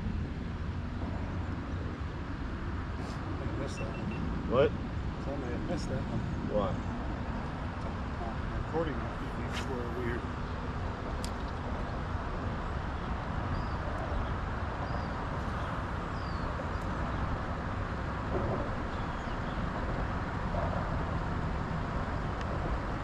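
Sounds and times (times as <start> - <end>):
boat rushing noise: 2.8 - 11.0, 14.0 - 21.6.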